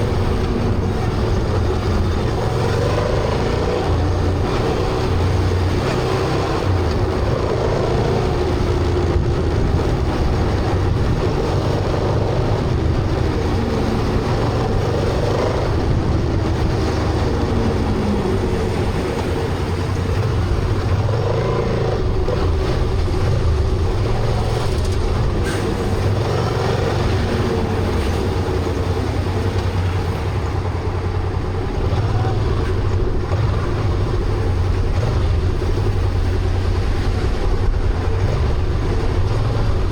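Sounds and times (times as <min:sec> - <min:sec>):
motorcycle engine running: 0:00.0 - 0:39.9
wind and road noise: 0:00.0 - 0:39.9.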